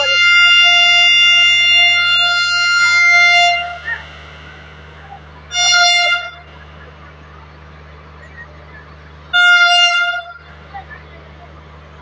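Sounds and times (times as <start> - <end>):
train horn blast: 0.0 - 8.2, 9.3 - 10.5.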